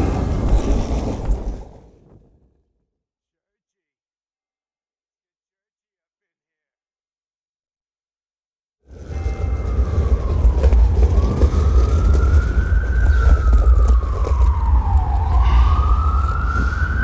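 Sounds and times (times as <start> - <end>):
low rumble: 8.9 - 17.0
siren wailing: 8.9 - 17.0.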